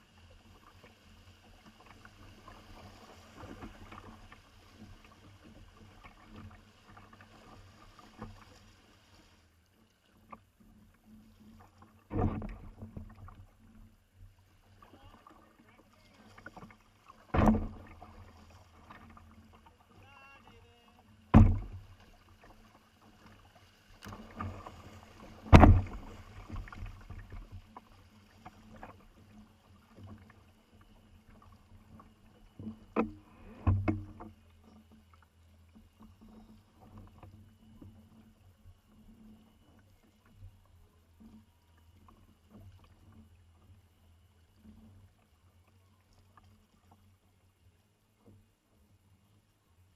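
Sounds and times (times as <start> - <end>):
water washing against kayak hull: 0.0 - 43.8
sharp loud knocks: 21.3 - 21.8, 25.5 - 25.9.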